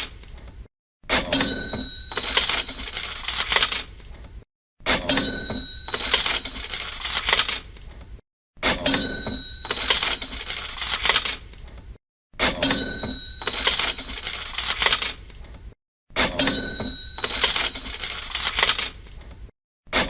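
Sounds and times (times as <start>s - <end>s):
cash register clicks: 1.1s - 4.0s, 4.9s - 7.8s, 8.6s - 11.6s, 12.4s - 15.4s, 16.2s - 19.2s
cash register bell ding: 1.2s - 3.6s, 5.0s - 7.4s, 8.7s - 11.2s, 12.5s - 15.0s, 16.2s - 18.9s
jingling coins: 1.3s - 4.1s, 5.1s - 7.8s, 8.8s - 11.6s, 12.6s - 15.4s, 16.4s - 19.2s.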